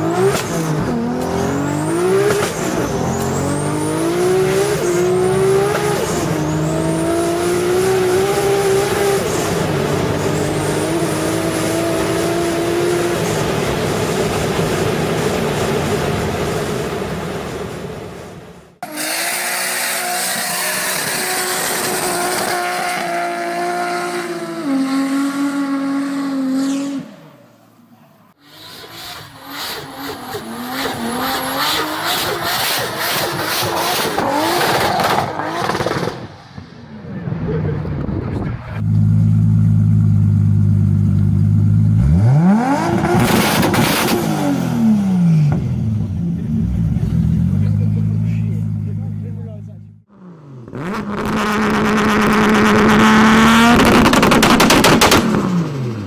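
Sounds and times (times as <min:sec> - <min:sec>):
turbocharged engine at high revs: 0:00.0 - 0:16.3, 0:18.8 - 0:27.1, 0:28.4 - 0:36.4, 0:38.7 - 0:56.0
exhaust and turbo noise: 0:28.4 - 0:56.0.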